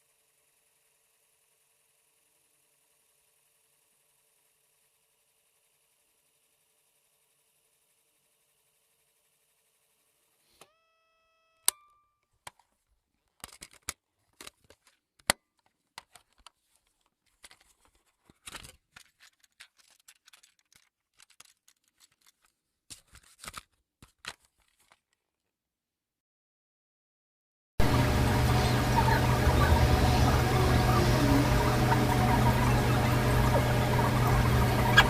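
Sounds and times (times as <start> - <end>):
steady beep-like tone: 27.8 - 35.0.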